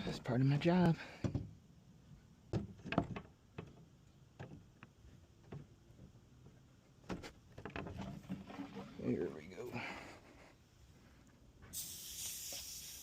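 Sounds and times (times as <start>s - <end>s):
light irregular clicks and knocks: 2.5s - 8.6s.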